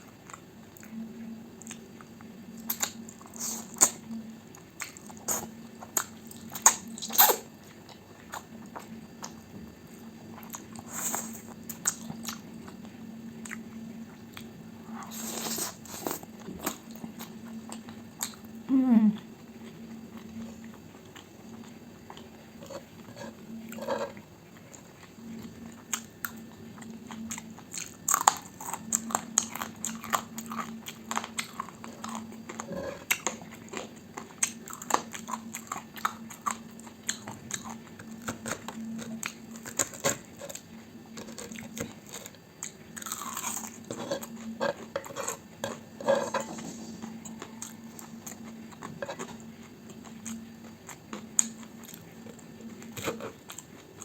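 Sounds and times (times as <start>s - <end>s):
crunchy chewing: 0.0s - 18.6s, 19.2s - 54.0s
faint low hum: 0.0s - 54.0s.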